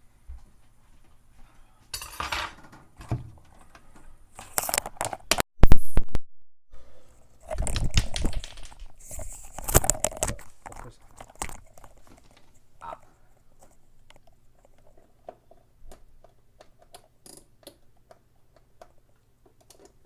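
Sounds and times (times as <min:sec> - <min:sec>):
dishes clattering: 0:02.0 - 0:02.7
noisy rustling: 0:07.2 - 0:12.9.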